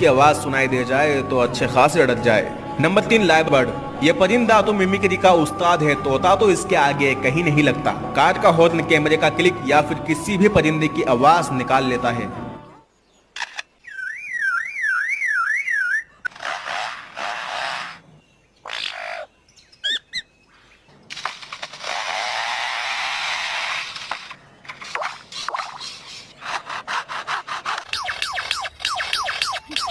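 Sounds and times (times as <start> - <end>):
harsh noisy bird calls: 13.2 - 29.9
lyrebird calling: 13.4 - 20.8, 21.7 - 29.9
siren-like warbling call: 13.9 - 16.4, 28.0 - 29.9
steady rasping: 23.0 - 28.7.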